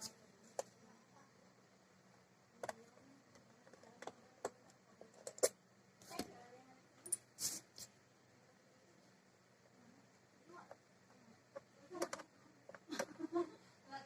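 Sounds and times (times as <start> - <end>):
laptop parts clicking and knocking: 11.5 - 13.2.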